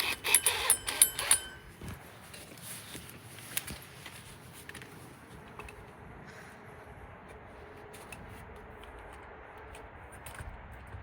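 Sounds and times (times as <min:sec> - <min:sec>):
metallic clinks: 0:00.0 - 0:02.4.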